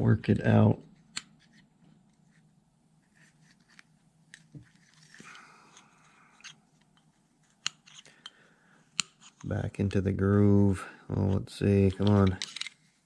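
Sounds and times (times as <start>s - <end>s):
low steady hum: 0.0s - 13.0s
hand tool clicks and scrapes: 11.9s - 12.8s.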